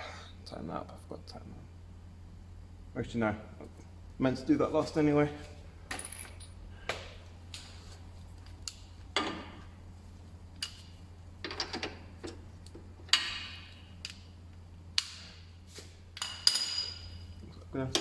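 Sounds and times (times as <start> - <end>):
metal tools clinking on car parts: 5.9 - 6.6.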